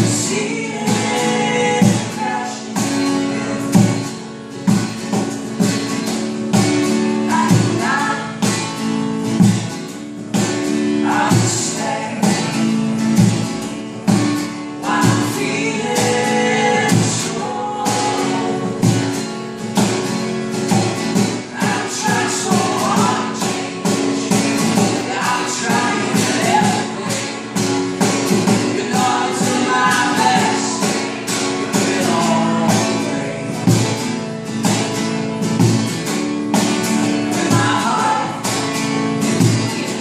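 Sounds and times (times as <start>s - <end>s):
person singing: 0.0s - 3.9s, 7.2s - 8.5s, 14.8s - 19.0s, 21.3s - 34.0s, 37.1s - 40.0s
guitar: 0.0s - 40.0s.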